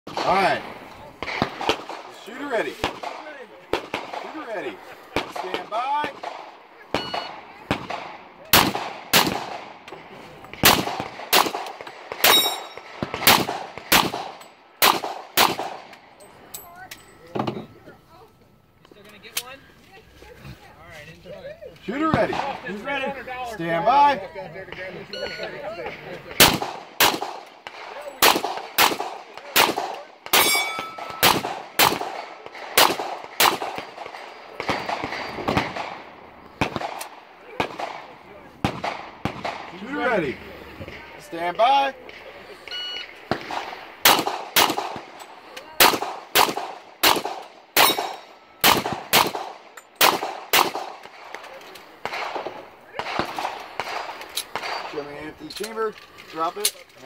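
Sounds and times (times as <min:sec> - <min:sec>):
pistol shots: 0:01.2 - 0:09.9, 0:10.5 - 0:16.0, 0:26.3 - 0:40.2, 0:43.3 - 0:45.2, 0:45.8 - 0:55.1
steel targets clanging: 0:12.2 - 0:12.9, 0:30.4 - 0:31.4.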